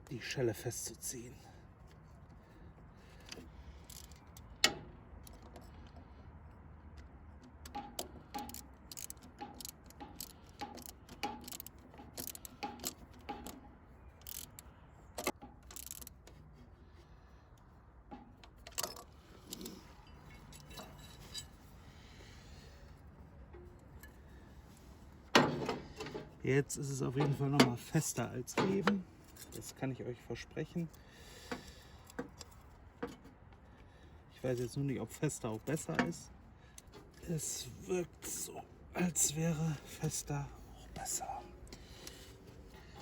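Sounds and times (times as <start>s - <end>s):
metal tool clicking on hose clamp: 3.2s - 5.6s, 7.6s - 13.6s, 14.2s - 16.2s.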